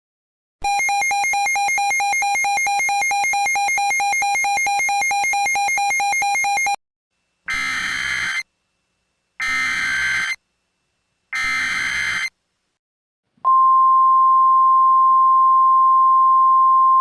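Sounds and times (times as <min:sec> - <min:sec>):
buzzy electronic alert beeps: 0:07.5 - 0:08.4, 0:09.4 - 0:10.4, 0:11.4 - 0:12.3.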